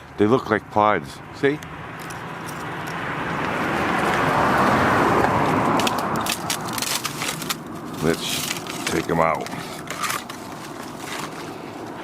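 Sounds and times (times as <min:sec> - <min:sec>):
car passing by: 0:01.7 - 0:06.3.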